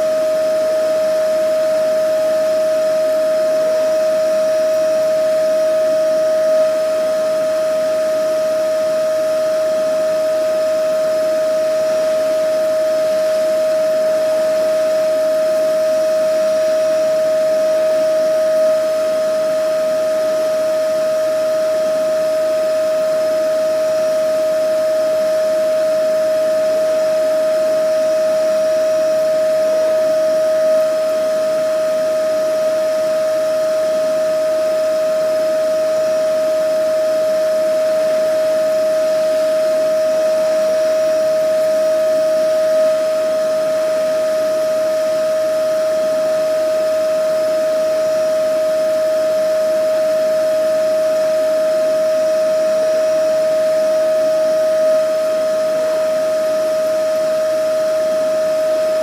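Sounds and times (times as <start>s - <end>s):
vacuum cleaner running: 0.0s - 1.0s.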